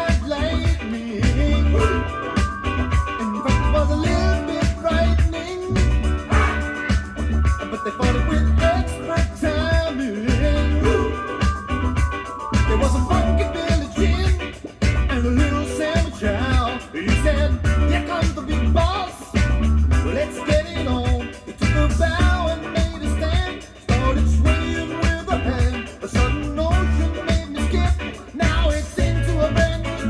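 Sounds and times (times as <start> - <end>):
disco music with singing: 0.0 - 30.0.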